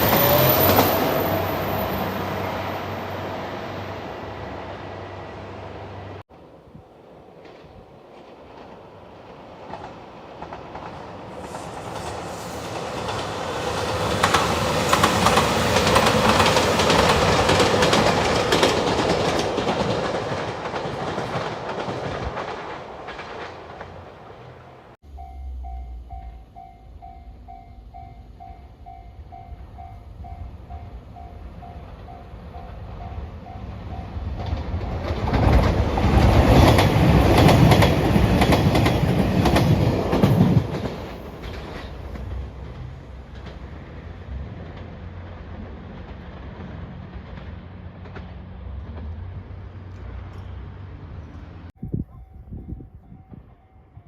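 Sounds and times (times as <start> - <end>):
train passing: 0.0 - 54.0
wheels clicking over rail joints: 12.8 - 25.8, 33.9 - 50.7
level crossing warning bell: 25.0 - 34.2.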